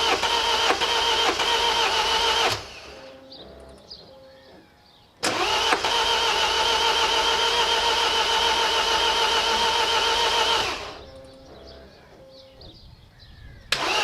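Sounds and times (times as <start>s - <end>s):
starter motor cranking engine: 0.0s - 3.8s, 5.2s - 11.8s, 13.7s - 14.0s.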